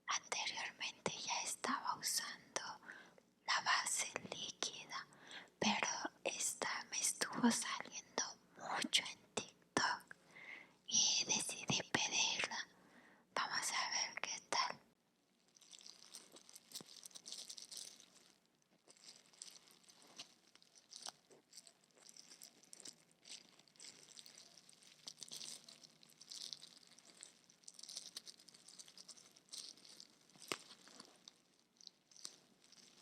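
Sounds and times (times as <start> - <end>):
packaging crinkling and rustling: 15.4 - 33.0.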